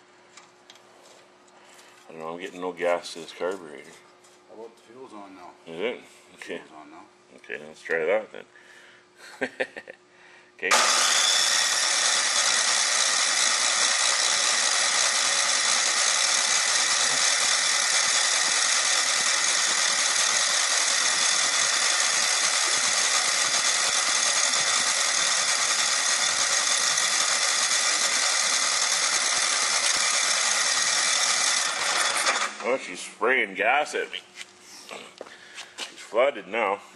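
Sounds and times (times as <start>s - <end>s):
electric starter cranking engine: 10.7s - 33.1s.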